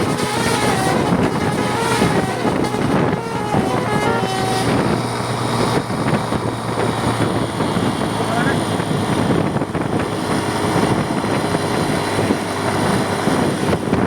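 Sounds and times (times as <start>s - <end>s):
musical air horn melody: 0.0s - 6.2s
low engine rumble: 0.0s - 14.0s
road noise: 0.0s - 14.0s.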